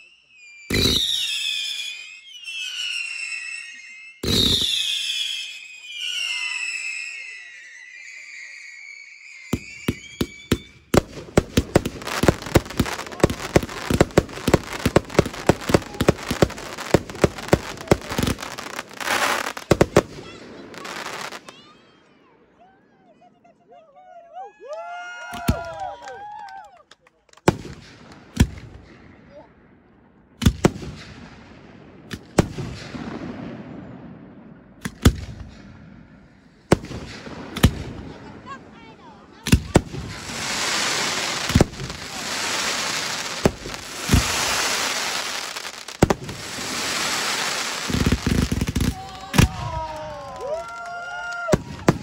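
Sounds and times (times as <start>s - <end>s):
fireworks bangs: 0.0s - 22.0s, 27.4s - 52.0s
fireworks rumble: 9.4s - 21.8s, 27.3s - 52.0s
crackling hiss: 40.0s - 49.4s.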